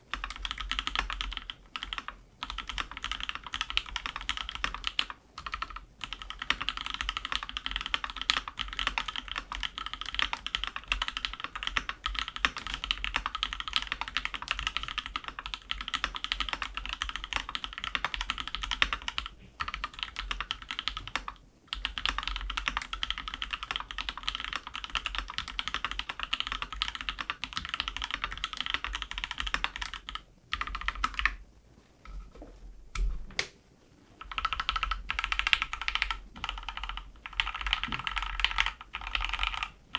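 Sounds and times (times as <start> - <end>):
mechanical keyboard typing: 0.1 - 31.4, 34.2 - 39.9.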